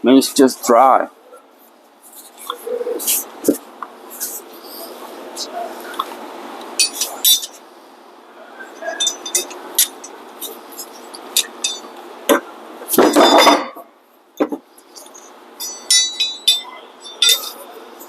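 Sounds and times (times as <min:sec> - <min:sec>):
metal tools clinking: 0:06.8 - 0:07.6, 0:08.8 - 0:12.0, 0:13.0 - 0:13.8, 0:14.4 - 0:18.0.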